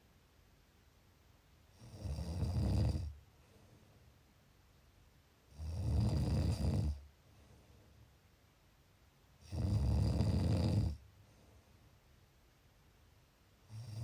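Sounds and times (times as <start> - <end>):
person snoring: 1.8 - 3.2, 5.5 - 7.0, 9.4 - 11.0.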